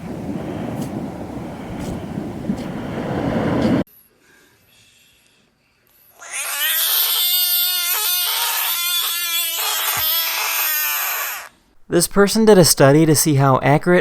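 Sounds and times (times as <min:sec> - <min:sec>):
animal's long pitched call: 0:06.2 - 0:11.6.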